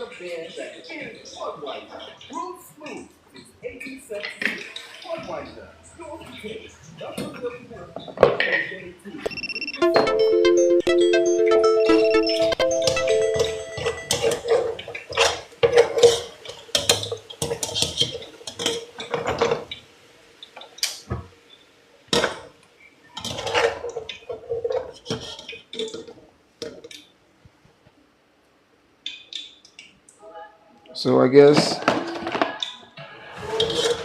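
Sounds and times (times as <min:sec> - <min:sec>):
pots and pans clattering: 0:14.3 - 0:19.8.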